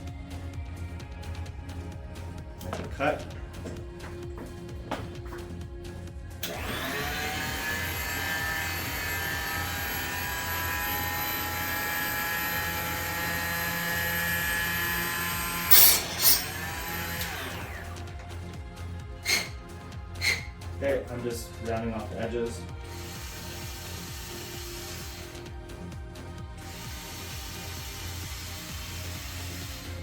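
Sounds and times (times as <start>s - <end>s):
rotary power tool cutting tubing: 6.4s - 18.1s, 19.2s - 19.6s, 20.2s - 20.5s, 22.8s - 25.6s, 26.6s - 30.0s.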